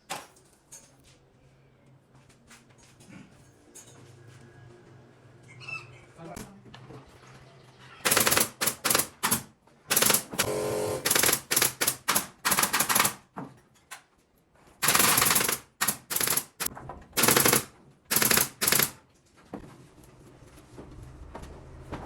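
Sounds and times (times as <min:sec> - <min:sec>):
pneumatic nail gun firing: 0:08.1 - 0:13.2, 0:14.8 - 0:19.0.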